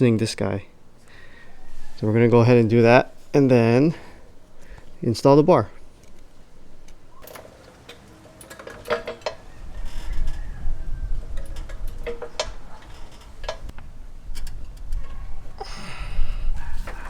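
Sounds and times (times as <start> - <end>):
metal tools clinking: 1.5 - 9.4.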